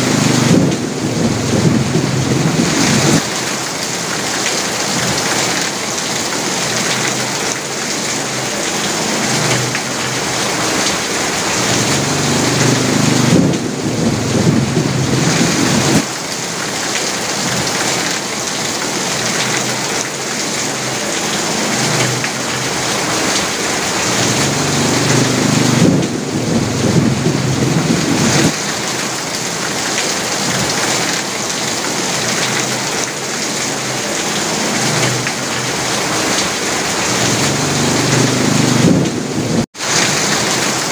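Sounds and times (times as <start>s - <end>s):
low thunder rumble: 0.0s - 3.3s, 11.5s - 16.0s, 24.0s - 28.6s
heavy rain on a sheet roof: 0.0s - 40.9s.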